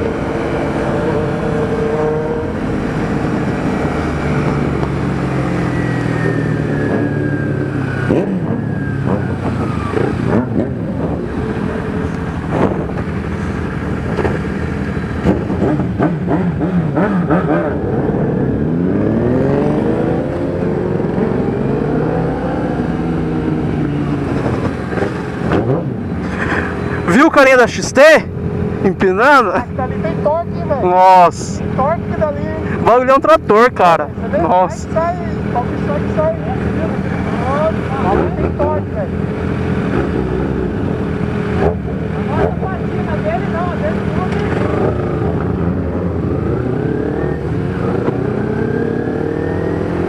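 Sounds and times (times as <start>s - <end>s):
motorcycle revving up hard: 0.0s - 26.2s, 34.3s - 50.0s
motorcycle engines in traffic: 0.0s - 50.0s.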